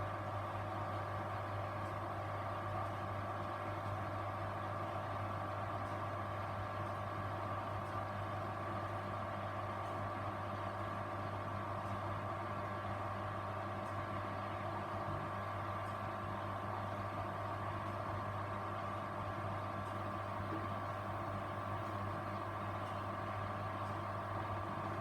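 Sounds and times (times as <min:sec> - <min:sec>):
washing machine motor hum: 0:19.8 - 0:25.0.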